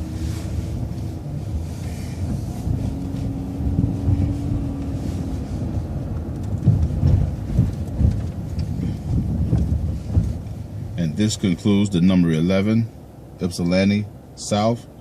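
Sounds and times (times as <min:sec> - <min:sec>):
low thumps: 0:00.0 - 0:11.0
bus engine and road rumble: 0:00.0 - 0:15.0.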